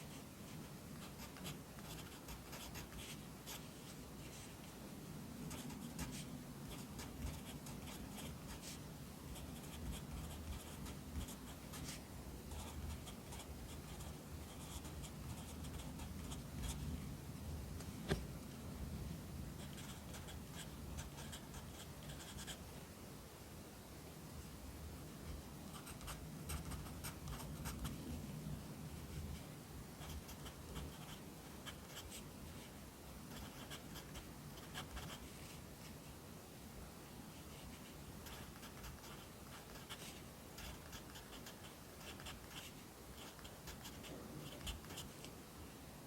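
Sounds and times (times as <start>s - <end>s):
pencil writing on paper: 1.0s - 3.6s, 5.5s - 8.8s, 9.4s - 16.8s, 19.6s - 22.6s, 33.3s - 35.2s, 38.2s - 45.1s.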